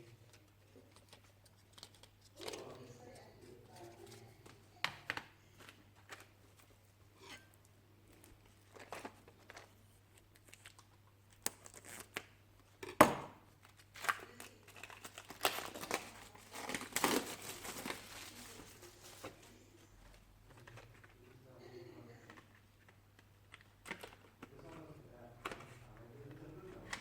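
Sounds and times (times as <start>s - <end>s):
packaging crinkling and tearing: 8.6s - 12.4s, 13.6s - 19.4s.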